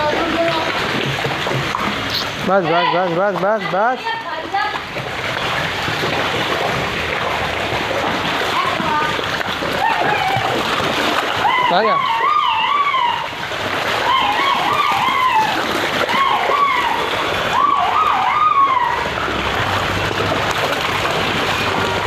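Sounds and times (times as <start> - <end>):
water splashing and sloshing: 0.0 - 22.0
high wavering wail: 11.4 - 13.4, 14.0 - 19.2.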